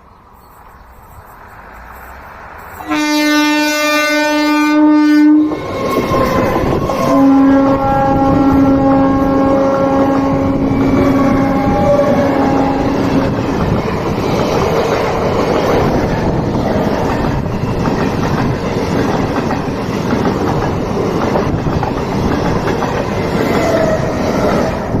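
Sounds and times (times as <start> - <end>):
train rumbling on rails: 0.0 - 25.0
train horn blast: 2.7 - 13.2.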